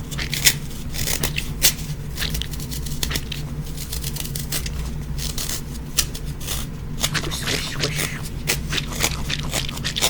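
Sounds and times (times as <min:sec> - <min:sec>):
low steady hum: 0:06.7 - 0:10.0
soft object squeezed crackling: 0:07.0 - 0:10.0.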